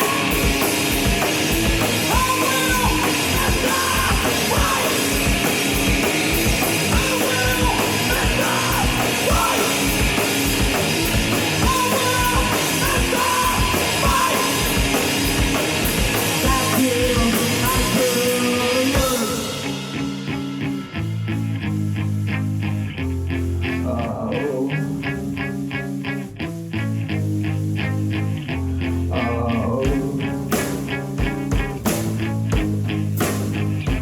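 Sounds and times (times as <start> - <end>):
person yelling vocals: 0.0 - 0.6, 2.1 - 5.3, 6.9 - 10.2, 11.5 - 14.9
drum kit with cymbals: 0.0 - 22.5, 29.9 - 34.0
electric guitar: 0.0 - 34.0.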